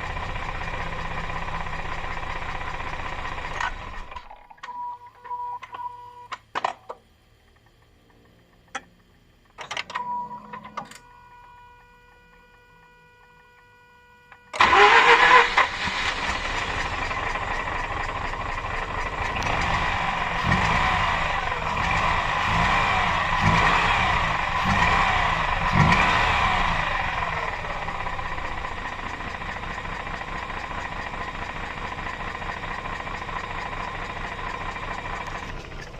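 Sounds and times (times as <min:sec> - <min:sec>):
rotary engine revving and idling: 0:14.6 - 0:35.9.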